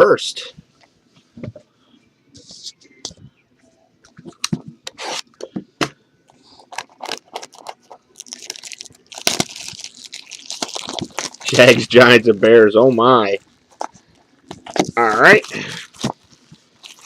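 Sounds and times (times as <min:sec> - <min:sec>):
crinkling rustle: 0:06.6 - 0:12.3, 0:13.3 - 0:17.0
packaging being torn open: 0:06.7 - 0:11.8, 0:14.6 - 0:17.0.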